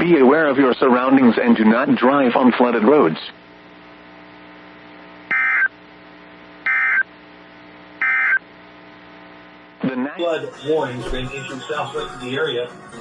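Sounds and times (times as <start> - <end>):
steady low hum: 0.0 - 12.4
data tone bursts: 5.3 - 5.7, 6.7 - 7.1, 8.0 - 8.4.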